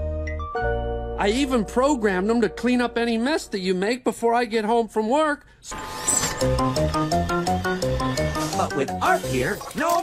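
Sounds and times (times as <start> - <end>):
bouncy plucked cartoon music: 0.0 - 3.8, 6.4 - 10.0.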